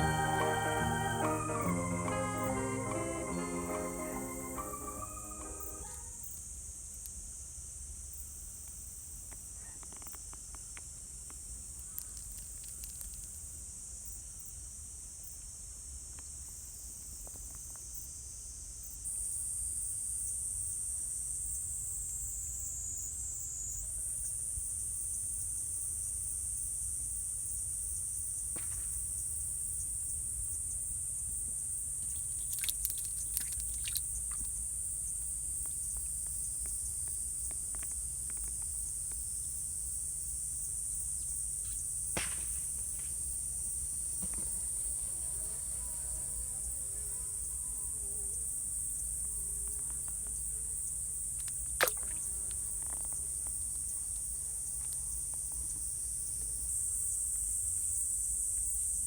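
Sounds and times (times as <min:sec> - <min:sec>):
high-pitched insect chorus: 0:00.0 - 0:06.4, 0:29.6 - 0:39.2.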